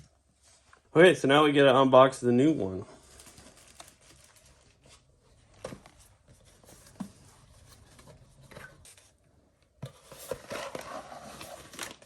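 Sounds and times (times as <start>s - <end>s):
packaging rustling: 3.0s - 9.0s, 9.9s - 12.0s.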